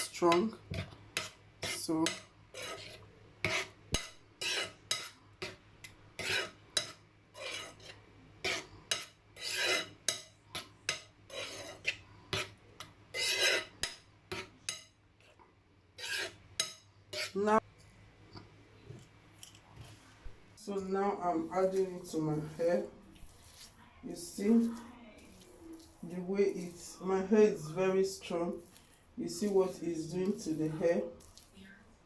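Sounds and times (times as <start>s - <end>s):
utensil stirring thick mixture in pot: 0.0s - 17.6s, 21.3s - 31.6s.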